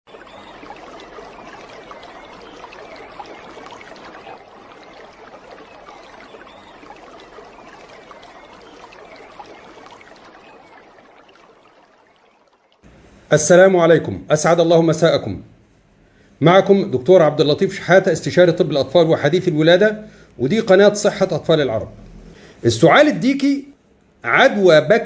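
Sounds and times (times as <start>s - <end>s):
water trickling: 0.0s - 13.3s.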